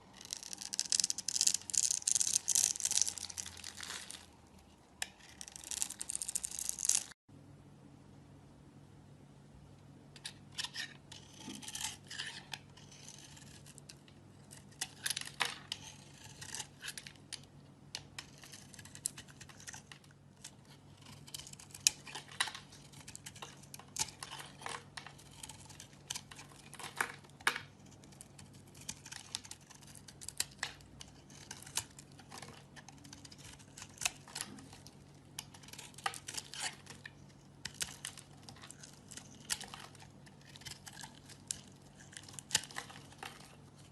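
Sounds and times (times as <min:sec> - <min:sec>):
knife scraping soap: 0:00.1 - 0:07.1, 0:10.2 - 0:43.9.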